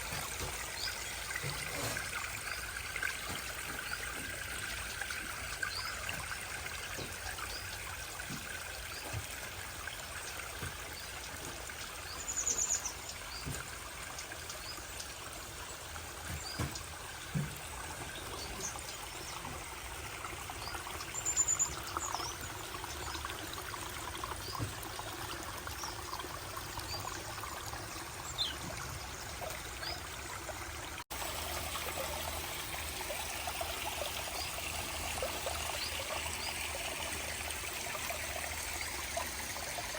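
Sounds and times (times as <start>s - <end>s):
water trickling over rocks: 0.0s - 39.9s.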